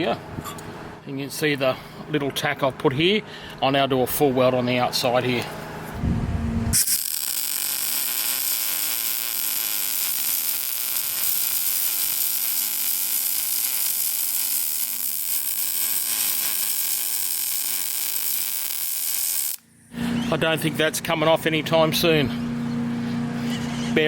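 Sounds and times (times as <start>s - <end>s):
arc welder hissing: 6.8s - 19.6s.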